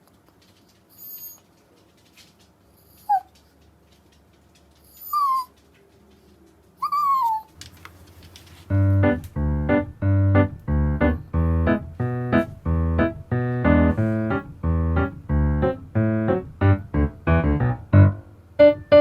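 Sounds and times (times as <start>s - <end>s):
keyboard playing bouncy notes: 8.7s - 19.0s.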